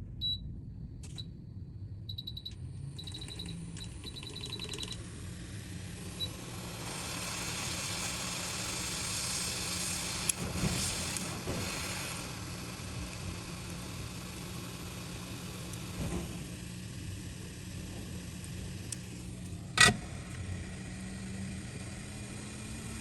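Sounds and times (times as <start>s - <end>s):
constant low hum: 0.0s - 23.0s
hiss of hot air blowing: 5.1s - 19.3s
clicks: 18.4s - 20.5s.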